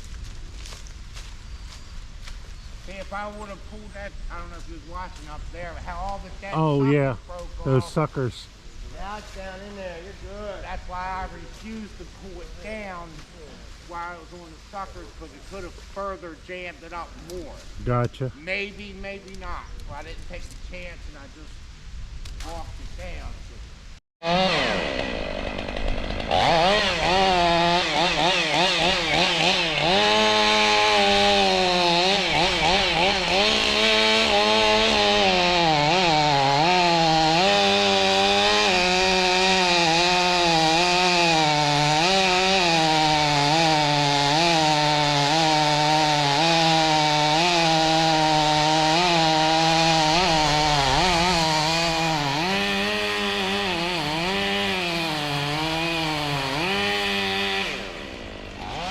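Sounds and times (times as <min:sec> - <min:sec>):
chainsaw cutting wood: 0:24.2 - 0:58.9.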